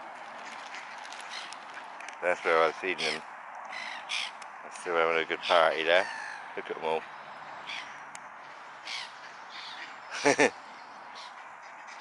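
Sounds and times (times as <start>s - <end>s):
flock of birds calling: 0.4s - 4.4s, 5.1s - 12.0s
loud harsh bird call: 3.0s - 4.4s, 8.8s - 10.5s.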